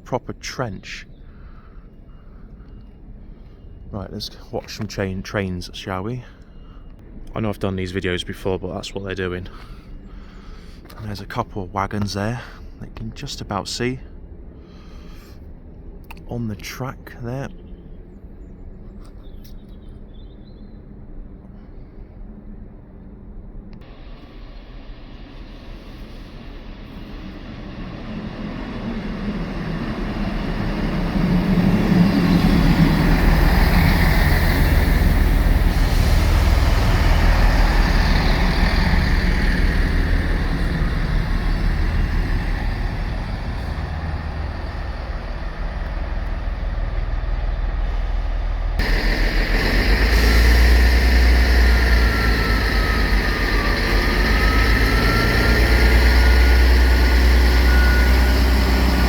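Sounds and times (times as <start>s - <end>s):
diesel train rumble: 0.0s - 16.2s, 20.9s - 59.0s
thin whine: 23.9s - 59.0s.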